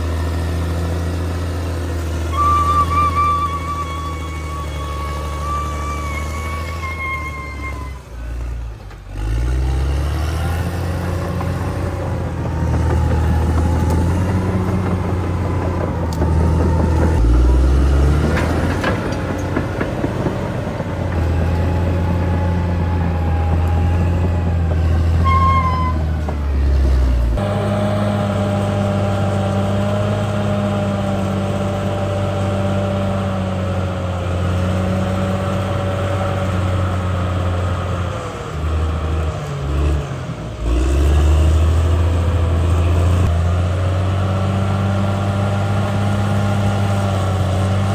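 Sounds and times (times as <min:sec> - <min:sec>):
bulldozer diesel engine: 0:00.0 - 0:47.9
short high squeak: 0:02.3 - 0:08.2, 0:25.2 - 0:26.2.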